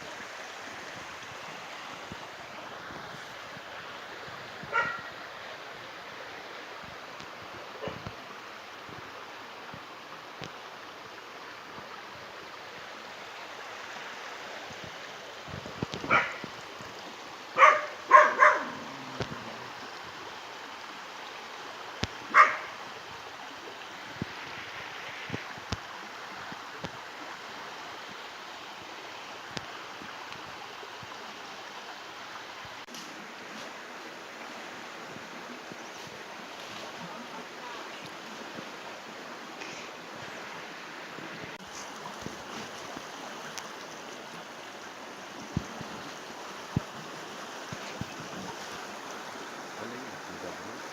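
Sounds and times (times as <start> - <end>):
stream rushing: 0.0 - 50.9
dog barking: 4.7 - 5.1, 16.1 - 16.4, 17.6 - 19.0, 22.3 - 22.8.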